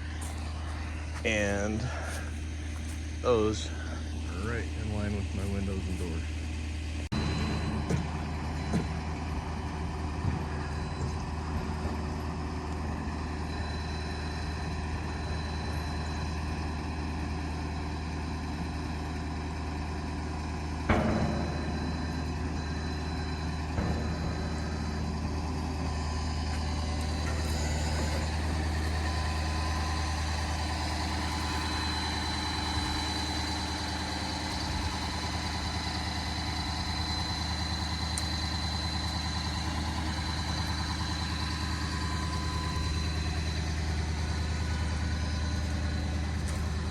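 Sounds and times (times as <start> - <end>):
engine idling: 0.0 - 46.9
sharp metal clank: 20.9 - 35.2.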